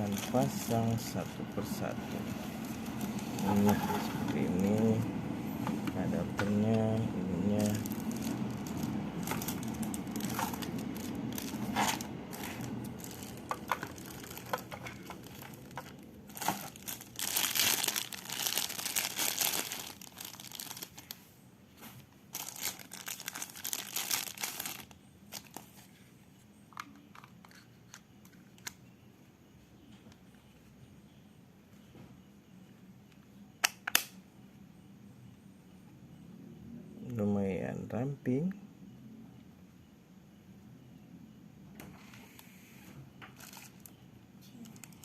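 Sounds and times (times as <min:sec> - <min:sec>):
plastic packaging crinkling: 0:00.0 - 0:05.0, 0:06.5 - 0:21.2, 0:22.3 - 0:25.9, 0:43.4 - 0:44.0, 0:44.6 - 0:45.0.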